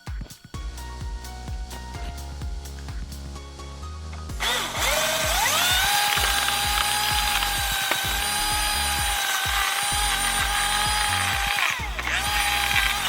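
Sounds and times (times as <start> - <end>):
electric chainsaw cutting: 4.4 - 13.0.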